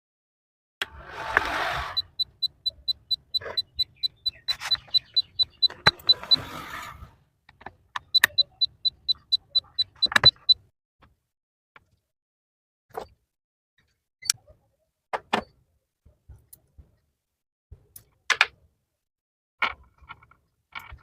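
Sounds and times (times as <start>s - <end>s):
short high electronic beeps: 1.8s - 6.5s, 8.1s - 10.6s.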